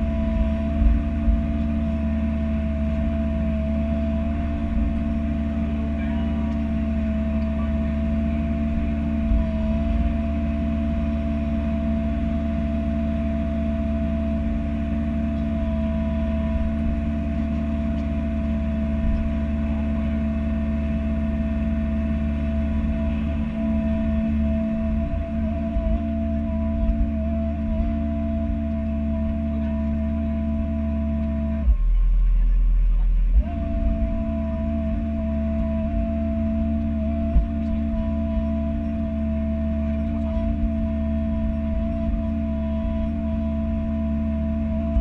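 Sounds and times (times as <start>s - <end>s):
constant whine: 0.0s - 45.0s
diesel engine running: 0.0s - 45.0s.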